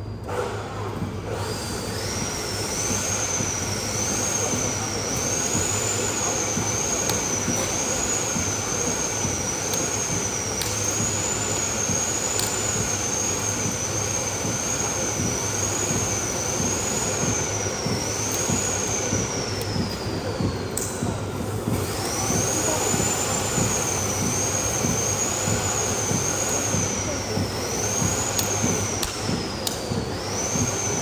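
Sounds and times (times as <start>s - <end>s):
machine low hum: 0.0s - 31.0s.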